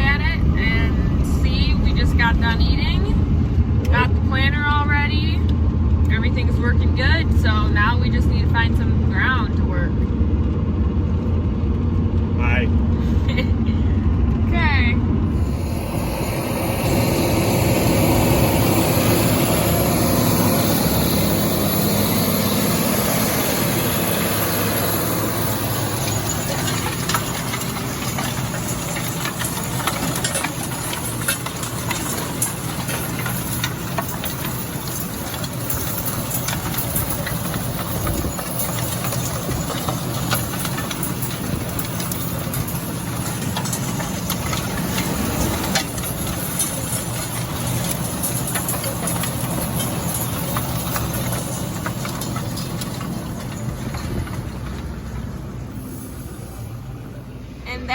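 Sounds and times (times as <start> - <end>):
rough rumble: 0.0 - 57.9
vehicle engine humming: 0.0 - 57.9
clicks and rattles: 15.4 - 55.6.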